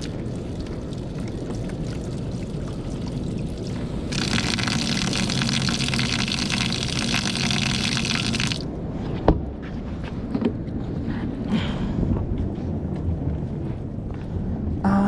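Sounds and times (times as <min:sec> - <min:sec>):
water running from a tap: 0:00.0 - 0:08.6.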